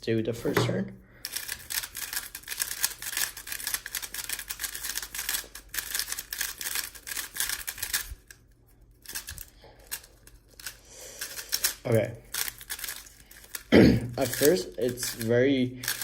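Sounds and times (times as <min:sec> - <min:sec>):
speed cube clicking and scraping: 0:01.2 - 0:16.0.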